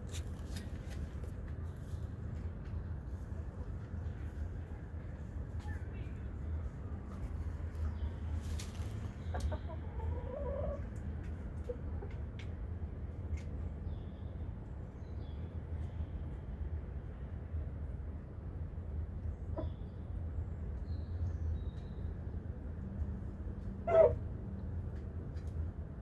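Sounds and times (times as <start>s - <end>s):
chickens clucking: 8.6s - 12.2s
chicken clucking: 9.3s - 11.0s.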